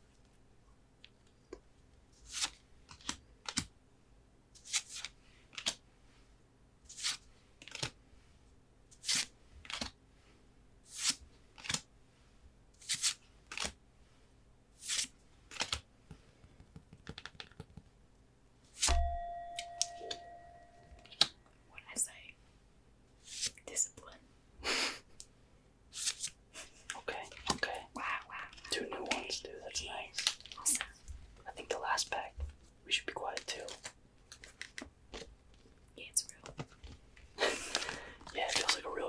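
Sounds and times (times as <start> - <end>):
cards sliding papery swish: 2.2 - 3.6, 6.9 - 7.9, 9.0 - 9.9, 10.8 - 11.8, 12.8 - 13.8, 14.8 - 15.8, 23.2 - 23.6, 26.0 - 26.4
ringing tone: 18.9 - 21.2.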